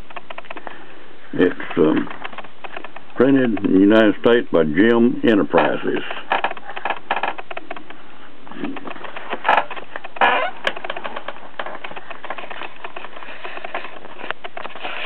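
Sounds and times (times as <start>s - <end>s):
paper rustles: 8.6s - 15.0s.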